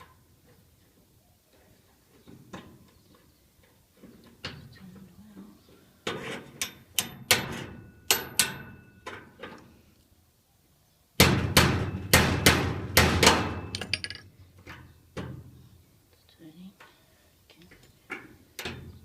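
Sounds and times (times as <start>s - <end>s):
metal ringing: 13.5s - 14.3s.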